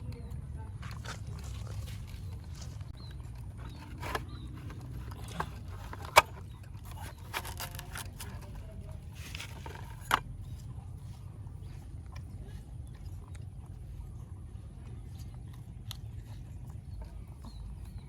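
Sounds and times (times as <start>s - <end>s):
monkey chewing fruit: 0.0s - 18.0s.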